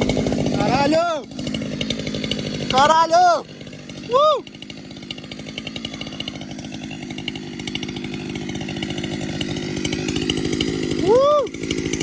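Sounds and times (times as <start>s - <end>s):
chainsaw running: 0.0s - 12.0s.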